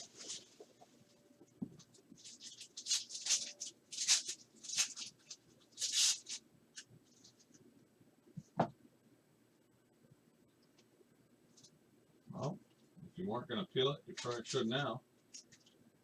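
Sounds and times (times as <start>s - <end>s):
plastic wrapping crinkling and tearing: 2.2s - 6.9s, 14.2s - 14.6s.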